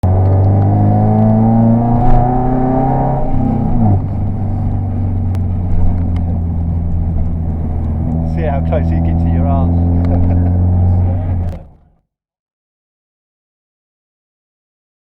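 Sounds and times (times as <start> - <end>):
car engine running: 0.0 - 12.0.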